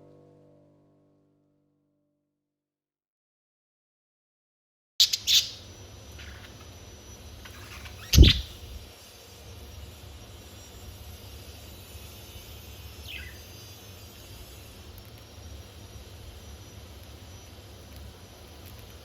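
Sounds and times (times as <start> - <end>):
budgerigar chirps: 5.0 - 5.6, 13.0 - 13.4.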